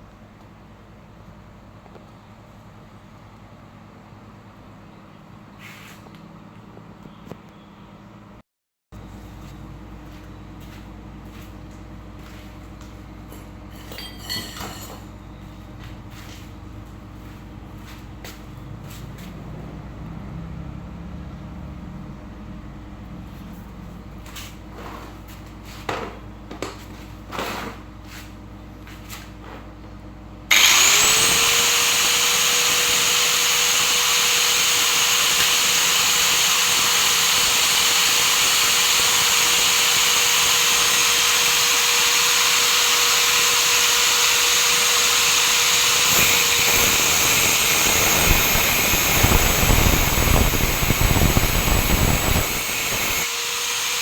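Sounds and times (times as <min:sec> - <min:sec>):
electric power cutter whining: 0:30.5 - 0:54.0.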